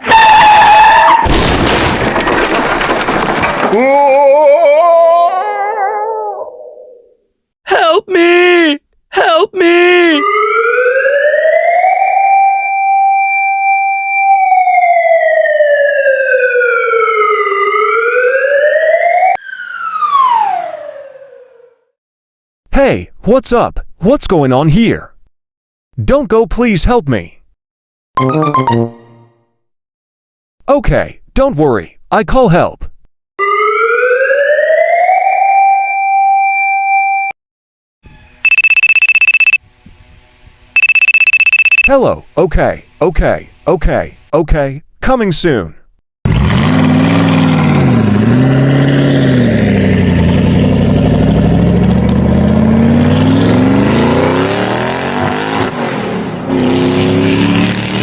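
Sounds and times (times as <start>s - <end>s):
siren wailing: 10.2s - 13.4s, 14.1s - 21.8s
telephone ringing: 38.5s - 39.6s, 40.8s - 41.9s.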